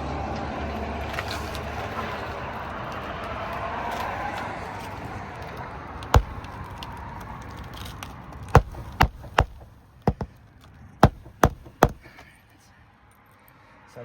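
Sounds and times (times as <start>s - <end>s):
hammer knocks on shingle roof: 6.2s - 6.5s, 8.6s - 10.4s, 11.0s - 12.2s.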